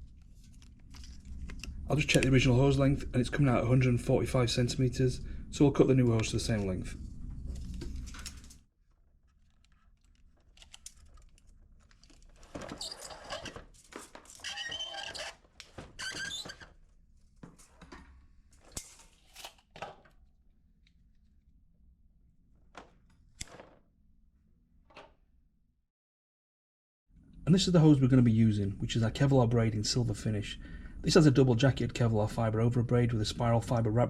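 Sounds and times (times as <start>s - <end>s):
rustling and scraping: 6.5s - 19.6s.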